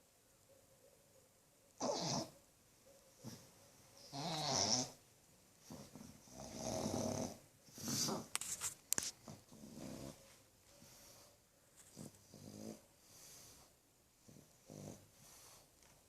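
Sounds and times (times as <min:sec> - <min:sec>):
dog snoring: 0:01.8 - 0:02.4, 0:03.2 - 0:05.0, 0:05.6 - 0:08.3, 0:09.2 - 0:10.2, 0:11.9 - 0:15.6.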